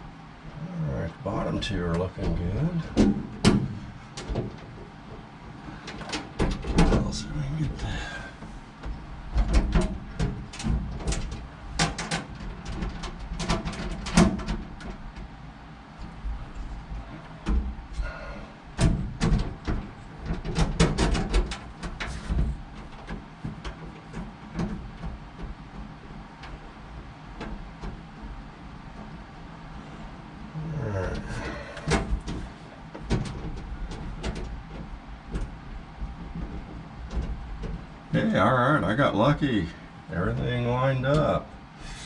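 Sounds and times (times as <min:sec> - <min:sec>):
fumbling noise: 0:30.5 - 0:32.0.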